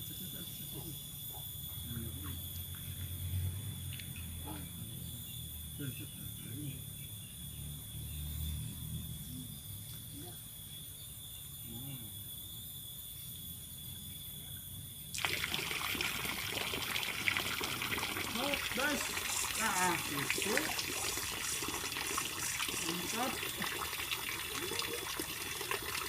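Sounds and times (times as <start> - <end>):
running water splashing: 15.2 - 26.0.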